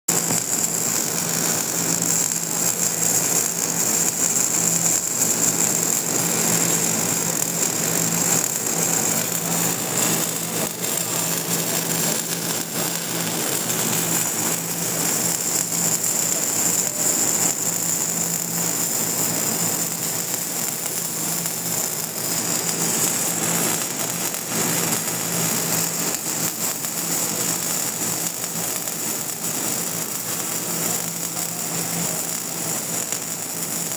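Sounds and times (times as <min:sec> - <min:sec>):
welding arc crackling: 0:00.0 - 0:33.9
high whine: 0:00.1 - 0:19.7.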